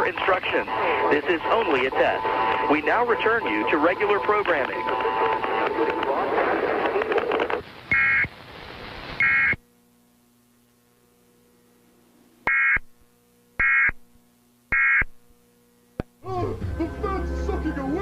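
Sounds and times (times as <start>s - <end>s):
static hiss: 0.0s - 16.2s
faint steady hum: 0.0s - 18.0s
digital data tone bursts: 14.7s - 15.2s.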